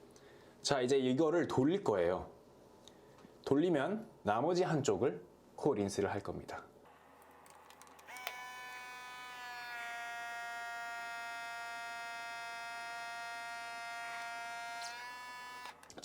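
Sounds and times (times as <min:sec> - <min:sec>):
suction motor whining: 0:06.9 - 0:16.0
motor switch click: 0:08.0 - 0:11.6.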